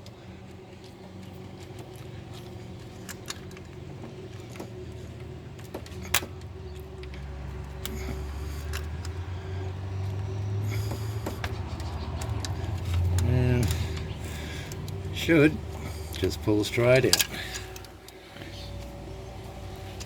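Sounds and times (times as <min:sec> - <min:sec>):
low vehicle engine hum: 0:00.0 - 0:20.0
small metallic clicks and taps: 0:11.0 - 0:15.1.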